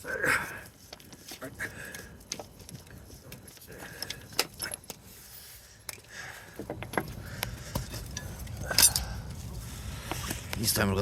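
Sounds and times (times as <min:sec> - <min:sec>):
metal wheel nuts and tools clinking: 0:00.0 - 0:09.5.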